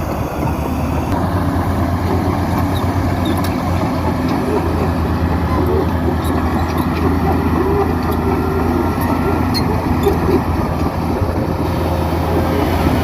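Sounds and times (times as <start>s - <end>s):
diesel engine under load: 0.0s - 13.0s
steel tracks squealing and clanking: 2.0s - 11.0s.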